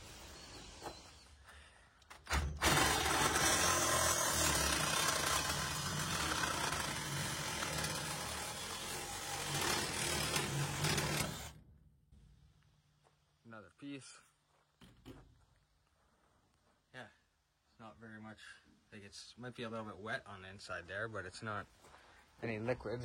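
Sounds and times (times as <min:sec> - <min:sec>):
power saw cutting metal pipe: 0:02.3 - 0:11.6.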